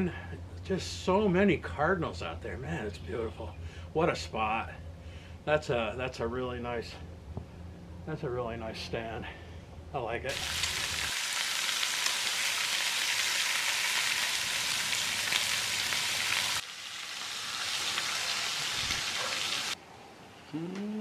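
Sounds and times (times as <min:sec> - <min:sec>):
food sizzling in a hot pan: 0:10.3 - 0:19.8.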